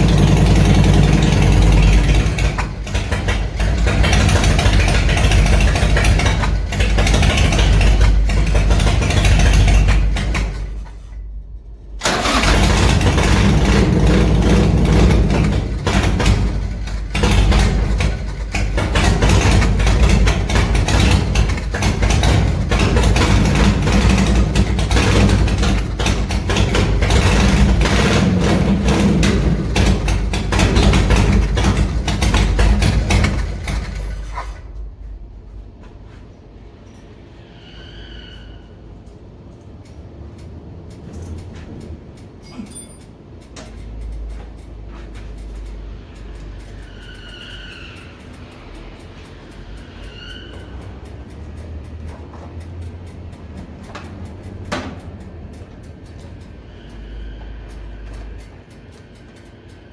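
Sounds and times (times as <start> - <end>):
motorcycle engine rumbling: 0.0 - 37.5.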